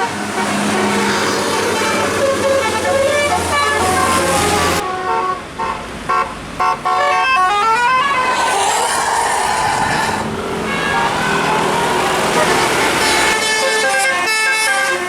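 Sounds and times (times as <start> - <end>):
musical air horn tune: 0.0 - 9.0, 10.7 - 15.0
steady noisy rush: 7.4 - 13.4.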